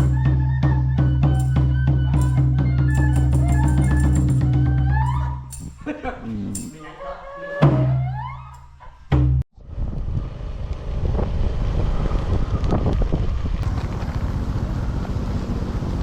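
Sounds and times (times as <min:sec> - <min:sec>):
wind buffeting microphone: 0:09.6 - 0:16.0.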